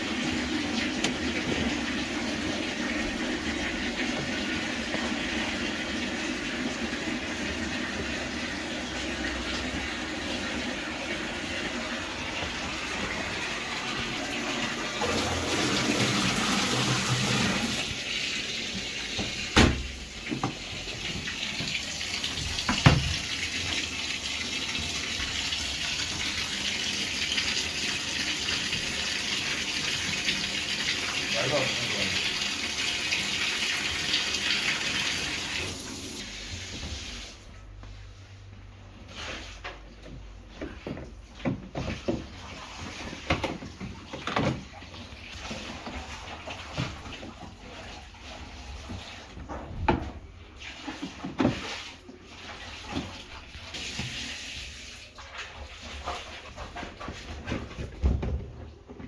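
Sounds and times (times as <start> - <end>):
running water rushing: 0.0 - 36.3.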